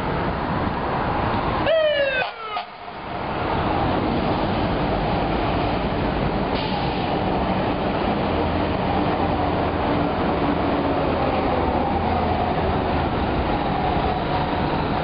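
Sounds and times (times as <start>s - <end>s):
diesel engine rumbling: 0.0s - 15.0s
hiss: 6.6s - 7.2s.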